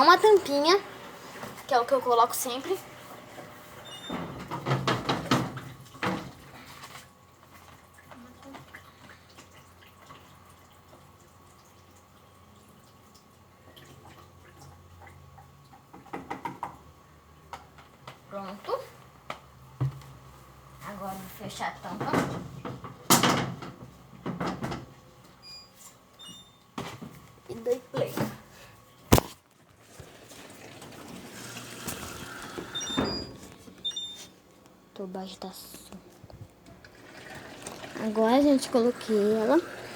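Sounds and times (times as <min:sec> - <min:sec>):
liquid dripping and trickling: 0:07.3 - 0:16.1
water running into tub: 0:29.9 - 0:33.8, 0:36.7 - 0:39.9.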